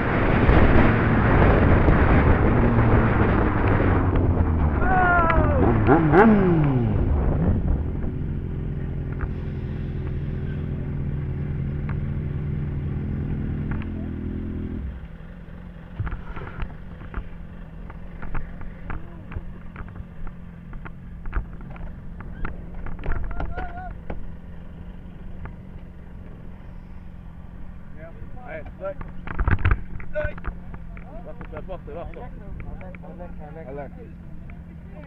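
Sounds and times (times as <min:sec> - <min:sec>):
low hum: 0:00.0 - 0:28.4
motorcycle engine revving and idling: 0:00.0 - 0:35.0.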